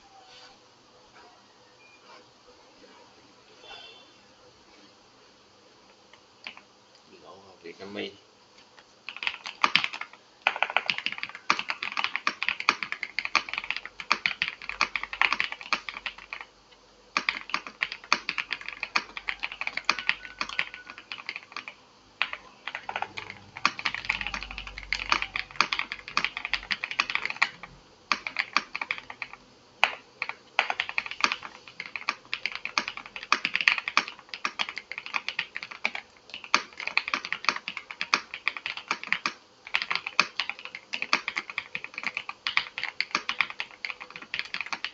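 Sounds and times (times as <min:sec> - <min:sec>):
mechanical keyboard typing: 0:06.4 - 0:06.6, 0:09.1 - 0:16.5, 0:17.2 - 0:44.9.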